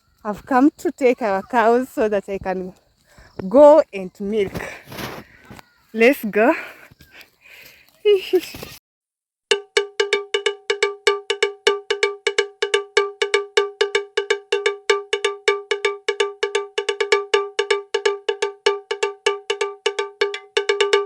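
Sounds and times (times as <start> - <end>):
cowbell clanking: 9.6 - 21.0.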